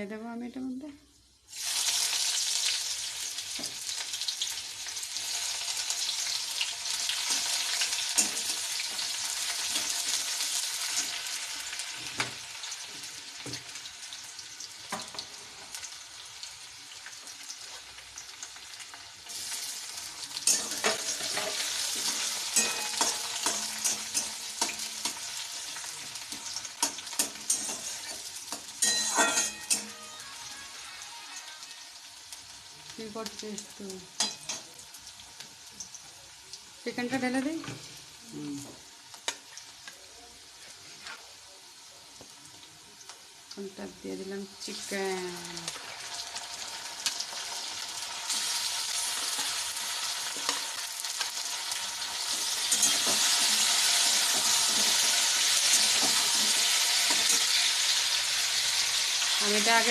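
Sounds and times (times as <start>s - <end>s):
onion sizzling in hot oil: 0.0s - 59.9s
spatula scraping and tapping pan: 20.4s - 25.3s, 26.2s - 30.0s, 52.3s - 57.6s.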